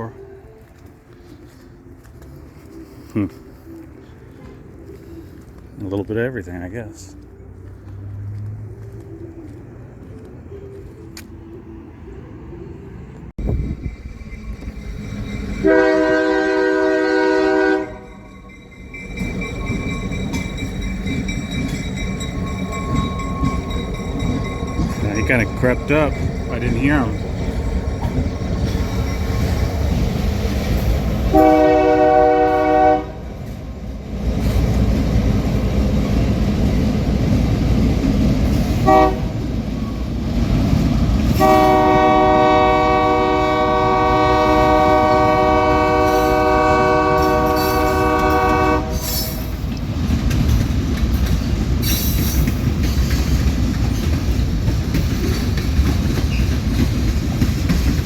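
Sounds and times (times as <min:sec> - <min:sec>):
train rumbling and clacking: 0:00.0 - 0:58.0
train horn blasts: 0:15.5 - 0:18.4, 0:31.2 - 0:33.6, 0:38.7 - 0:39.5, 0:41.3 - 0:49.6.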